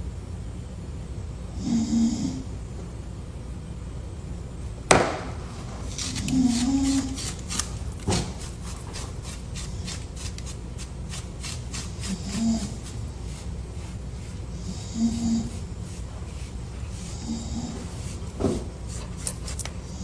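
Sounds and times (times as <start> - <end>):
sharp knocks: 4.9 - 5.4
person snoring: 14.6 - 15.6, 17.0 - 18.0.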